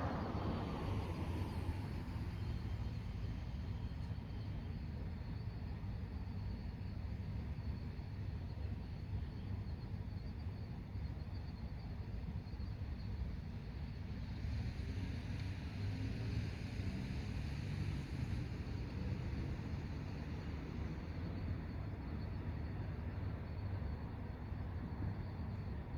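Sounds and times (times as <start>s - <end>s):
traffic rumble: 0.0s - 4.7s, 14.0s - 25.9s
night insects chirping: 0.0s - 25.9s.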